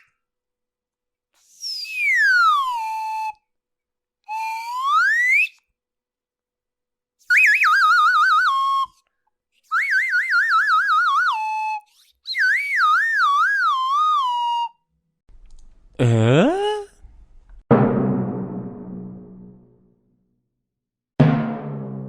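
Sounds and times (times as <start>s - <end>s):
cartoon warbling whistles: 1.4s - 3.4s.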